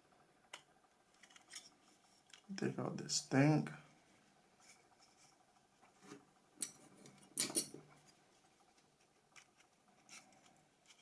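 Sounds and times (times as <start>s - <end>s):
phone parts clicking and scraping: 1.1s - 2.5s, 9.0s - 11.0s.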